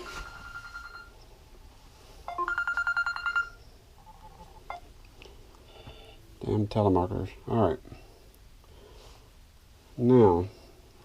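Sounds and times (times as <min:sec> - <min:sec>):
electronic phone ringtone trilling: 0:00.0 - 0:01.2, 0:02.3 - 0:04.8
short steady beep: 0:02.3 - 0:03.6.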